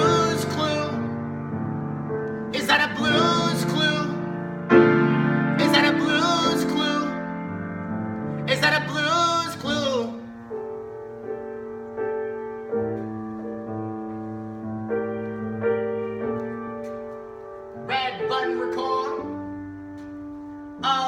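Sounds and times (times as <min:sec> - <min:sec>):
slow piano chords: 0:00.0 - 0:21.0
person singing: 0:02.5 - 0:04.2, 0:17.8 - 0:19.4, 0:20.8 - 0:21.0.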